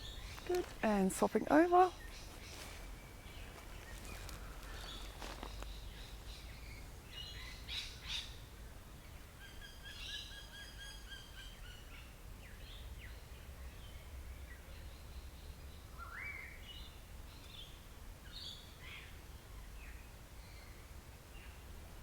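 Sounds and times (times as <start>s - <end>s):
low outdoor rumble: 0.0s - 7.7s
birds calling: 0.0s - 8.3s.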